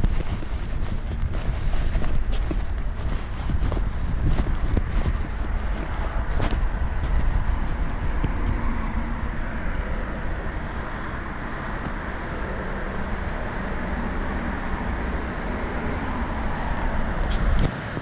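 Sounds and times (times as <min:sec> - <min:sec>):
road traffic noise: 0:00.0 - 0:18.0
vehicle passing: 0:00.0 - 0:18.0.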